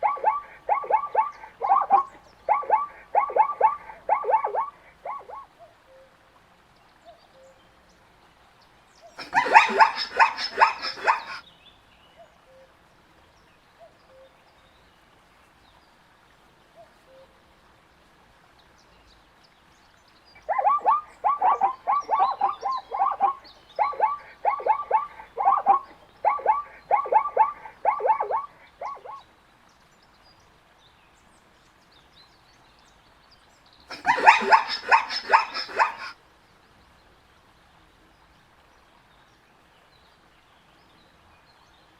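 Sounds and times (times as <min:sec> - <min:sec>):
zebra yelping barks: 0:00.0 - 0:05.5, 0:09.2 - 0:11.4, 0:20.4 - 0:29.2, 0:33.9 - 0:36.1.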